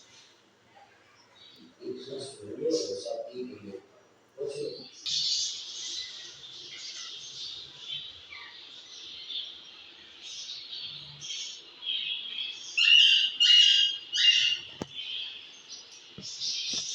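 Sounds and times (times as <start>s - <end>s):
birds chirping: 0.0s - 16.9s.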